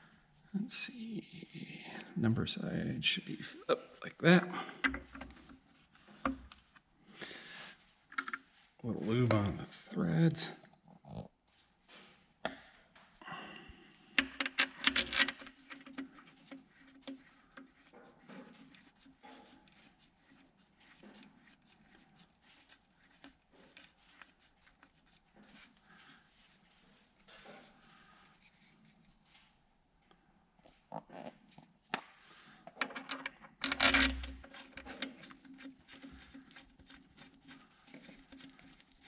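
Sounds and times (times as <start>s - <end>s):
small metal parts clicking and rattling: 4.5s - 5.6s, 8.1s - 8.6s, 14.2s - 26.1s, 32.6s - 39.0s.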